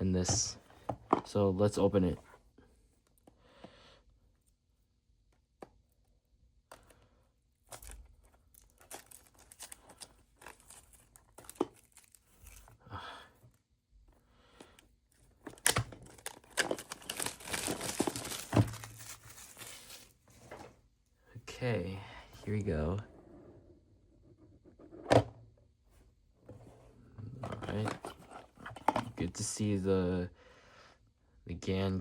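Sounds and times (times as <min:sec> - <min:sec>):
packaging tearing and crinkling: 0:07.7 - 0:12.7, 0:15.5 - 0:20.1.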